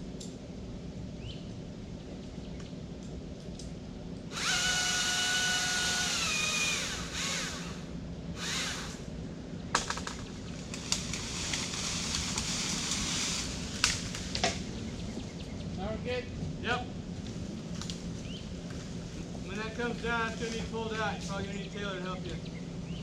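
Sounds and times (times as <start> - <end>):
chainsaw motor whining: 4.3 - 9.1
branches rustling: 9.8 - 15.9, 17.0 - 21.8.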